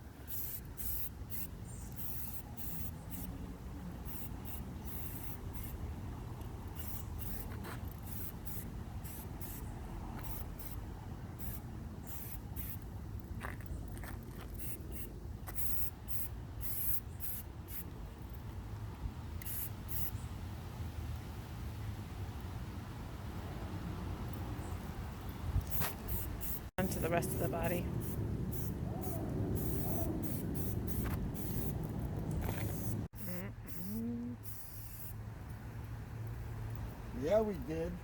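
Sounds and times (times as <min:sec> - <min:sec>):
spray can hissing: 0:00.3 - 0:03.3, 0:04.1 - 0:05.8, 0:06.8 - 0:09.6, 0:10.2 - 0:10.8, 0:11.4 - 0:12.8, 0:14.6 - 0:17.8, 0:19.4 - 0:20.1, 0:25.6 - 0:26.6, 0:28.0 - 0:31.8, 0:32.5 - 0:35.1
steady low rumble: 0:26.3 - 0:34.4.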